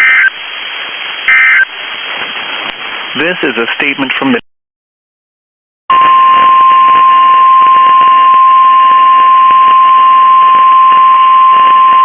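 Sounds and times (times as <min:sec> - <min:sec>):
radio hiss: 0:00.0 - 0:04.4
high-pitched alarm beep: 0:01.3 - 0:01.7, 0:05.9 - 0:12.0.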